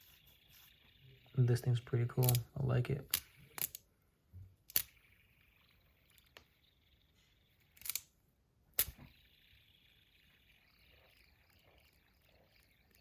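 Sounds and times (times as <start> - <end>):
fidget spinner clicks: 2.1 - 3.9, 4.6 - 13.0.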